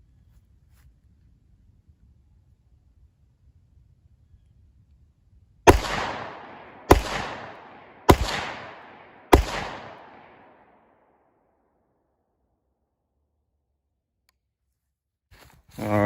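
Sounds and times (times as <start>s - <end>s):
rifle shots: 5.7s - 10.7s.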